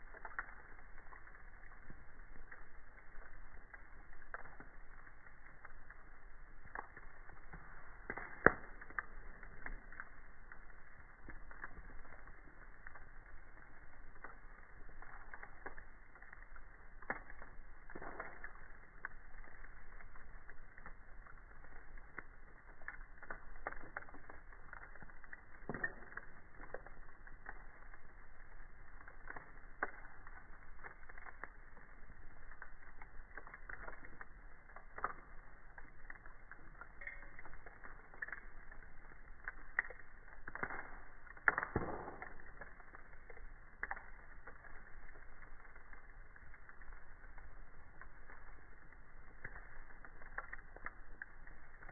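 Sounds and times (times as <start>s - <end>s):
campfire crackling and popping: 0.0s - 51.9s.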